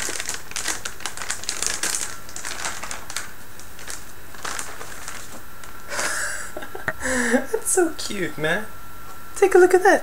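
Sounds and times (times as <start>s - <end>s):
plastic packaging crinkling: 0.0s - 6.2s.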